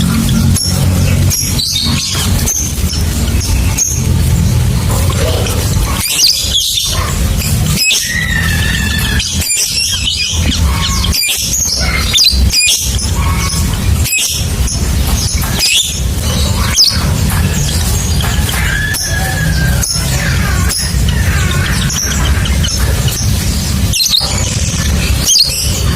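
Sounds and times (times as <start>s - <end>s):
low rumble: 0.0s - 9.3s
lovebird chattering: 0.0s - 25.9s.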